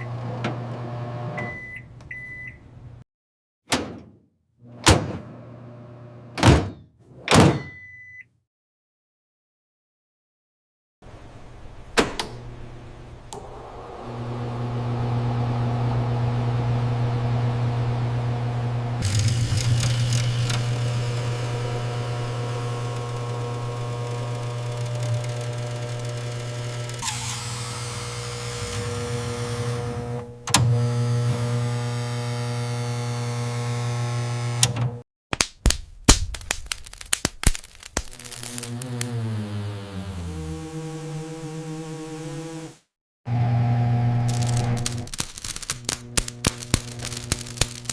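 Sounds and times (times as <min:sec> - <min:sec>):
microwave oven humming: 0:00.0 - 0:01.9, 0:05.3 - 0:06.4, 0:12.4 - 0:35.0, 0:43.3 - 0:45.1
crackling pops: 0:35.3 - 0:39.1, 0:44.3 - 0:47.9
steady electric hum: 0:43.6 - 0:47.9.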